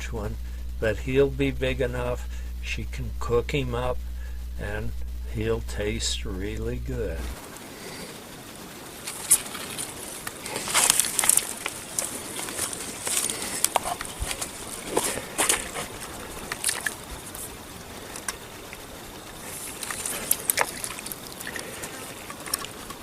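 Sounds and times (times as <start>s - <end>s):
sharp clicks and rustles: 6.5s - 23.0s
river water sloshing and trickling: 9.0s - 17.4s, 19.4s - 23.0s.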